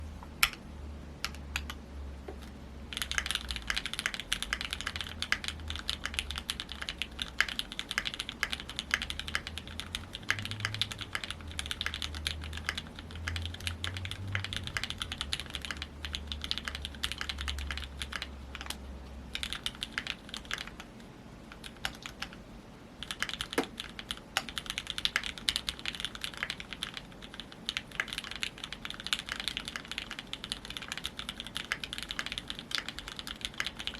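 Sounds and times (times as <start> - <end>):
mechanical keyboard typing: 1.2 - 20.9, 21.5 - 22.4, 23.0 - 33.9.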